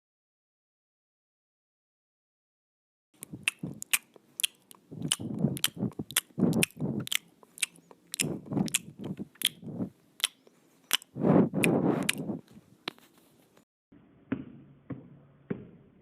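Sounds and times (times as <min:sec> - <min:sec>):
crunching bursts: 0:03.2 - 0:13.1.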